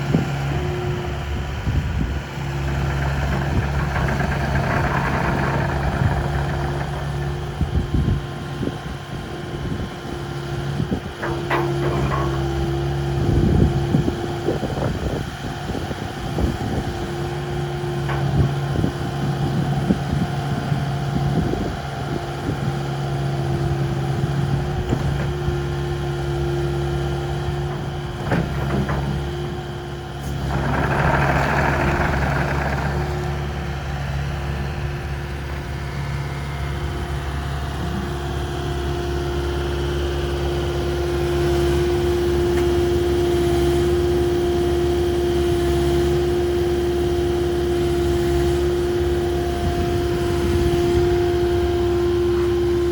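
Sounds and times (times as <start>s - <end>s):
diesel engine idling: 0.0s - 52.9s
knocks and clanks: 2.3s - 7.6s, 11.2s - 13.2s, 17.5s - 19.8s, 27.3s - 34.1s.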